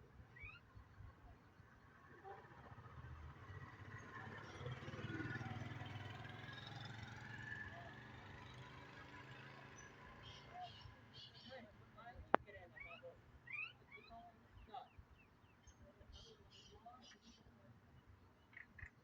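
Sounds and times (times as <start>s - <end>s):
small birds chirping faintly: 0.0s - 19.0s
motor vehicle passing: 2.4s - 11.3s.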